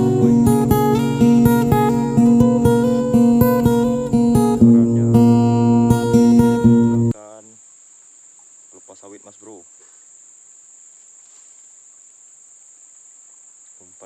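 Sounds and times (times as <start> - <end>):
acoustic guitar music: 0.0 - 7.2
insects droning: 0.0 - 14.0.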